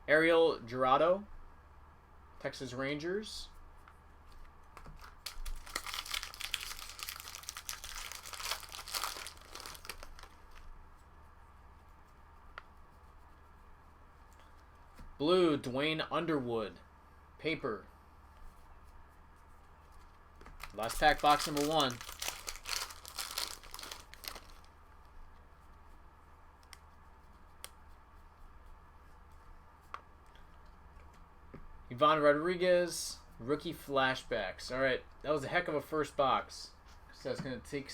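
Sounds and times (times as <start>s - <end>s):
cards clicking and rustling: 4.7s - 10.7s, 20.4s - 24.7s
foil wrapper crinkling: 4.9s - 10.7s, 20.5s - 24.7s.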